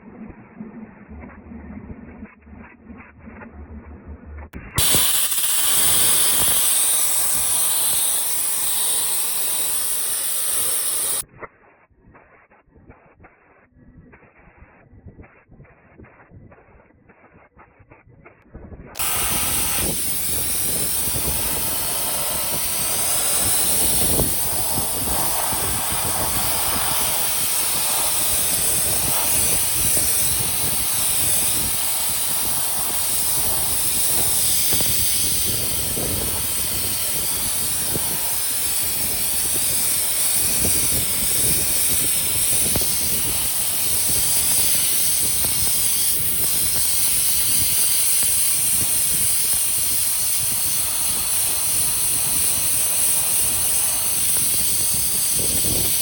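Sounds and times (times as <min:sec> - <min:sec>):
cutting torch hissing: 0:04.8 - 0:11.2, 0:19.0 - 0:56.0.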